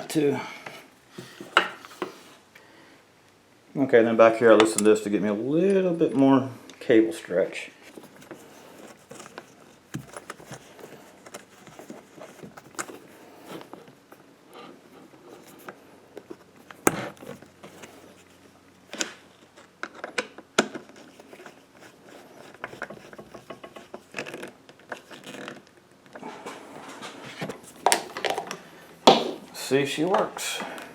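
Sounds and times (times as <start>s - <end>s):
hands clicking and scraping on fittings: 7.8s - 18.3s, 18.9s - 29.2s
sharp knock: 29.1s - 29.4s.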